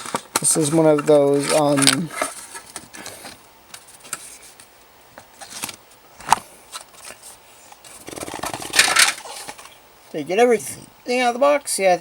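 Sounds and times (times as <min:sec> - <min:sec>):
rustling or scraping: 0:00.0 - 0:04.7, 0:05.3 - 0:09.8
packaging clicks and rustles: 0:00.0 - 0:09.8.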